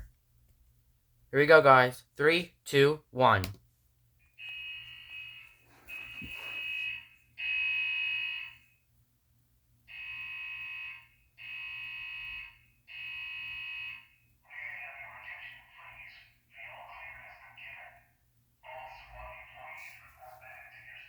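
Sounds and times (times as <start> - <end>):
electronic alarm beeps: 4.4 - 8.6.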